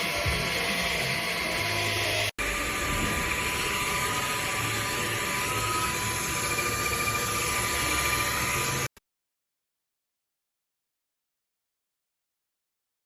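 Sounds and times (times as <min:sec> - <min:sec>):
vacuum cleaner motor whine: 0:00.0 - 0:08.9.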